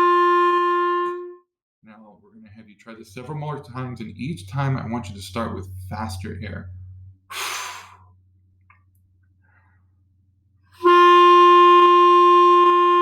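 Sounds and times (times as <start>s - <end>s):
clarinet note held: 0.0s - 1.4s, 10.8s - 13.0s
quick breath in: 7.3s - 8.1s.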